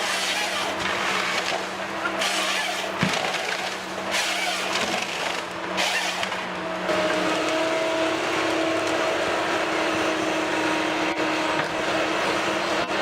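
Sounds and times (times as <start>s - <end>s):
heavy machine engine whining: 0.0s - 13.0s.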